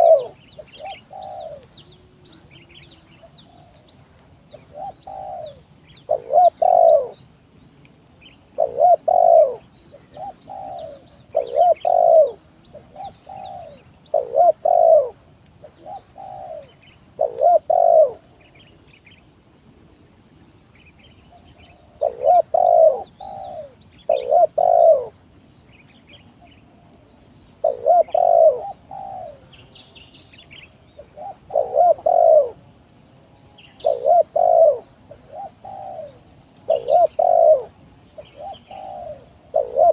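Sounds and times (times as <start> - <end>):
dove cooing: 0.0 - 3.9, 4.5 - 7.2, 8.5 - 18.6, 21.3 - 25.2, 27.6 - 29.7, 31.0 - 32.6, 33.7 - 39.9
small birds chirping: 0.0 - 32.6, 33.4 - 39.9.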